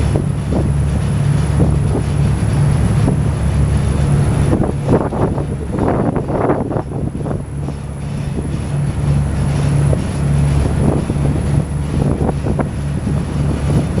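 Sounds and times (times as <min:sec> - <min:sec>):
boat engine running: 0:00.0 - 0:14.0.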